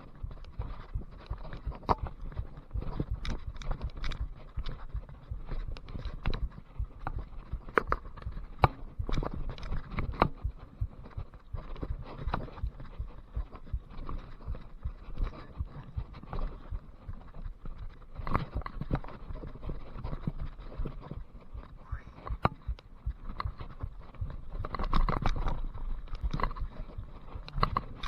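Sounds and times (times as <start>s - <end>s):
bike knocks and rattles: 0.0s - 21.3s
low rumble of tyres: 0.0s - 28.0s.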